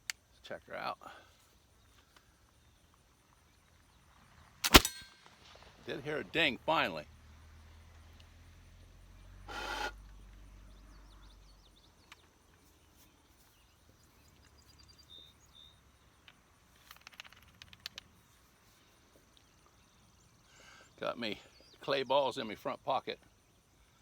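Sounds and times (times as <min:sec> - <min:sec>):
quick run of small clicks: 0:16.8 - 0:18.2.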